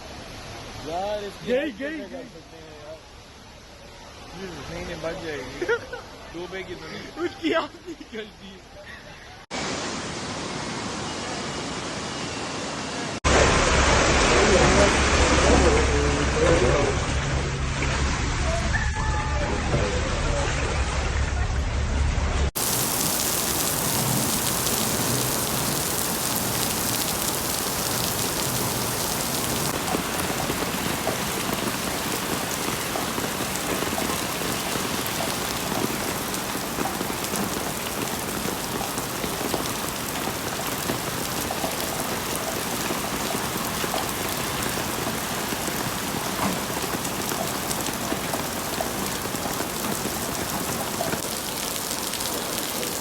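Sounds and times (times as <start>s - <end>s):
heavy rain falling: 13.2s - 20.9s, 22.5s - 53.0s.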